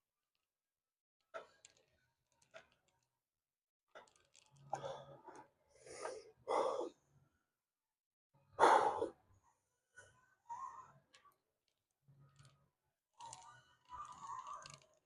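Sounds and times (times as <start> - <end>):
man breathing heavily: 8.6 - 9.1.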